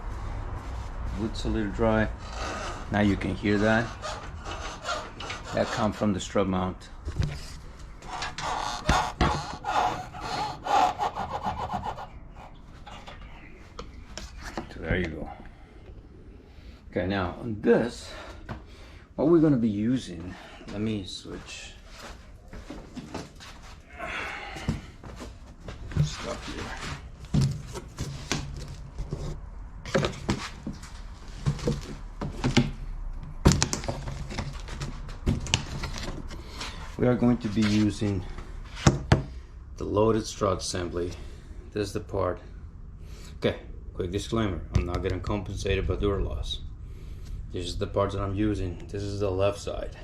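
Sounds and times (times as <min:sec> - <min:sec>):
suspension creaking and rubbing: 0:00.0 - 0:06.4, 0:07.1 - 0:15.3
low steady hum: 0:00.0 - 0:50.0.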